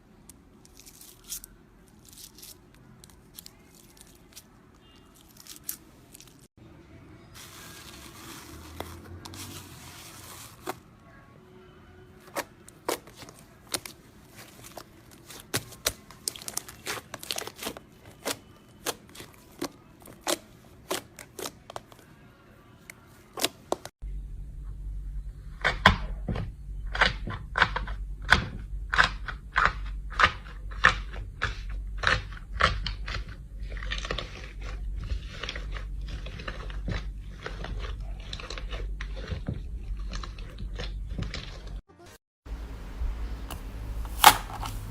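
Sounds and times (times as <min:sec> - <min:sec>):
low steady hum: 0:24.0 - 0:27.0, 0:42.5 - 0:44.9.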